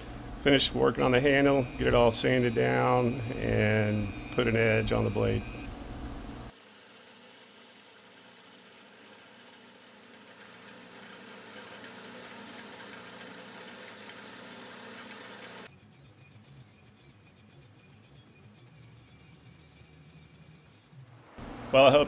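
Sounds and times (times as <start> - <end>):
power sander running: 1.0 - 6.5.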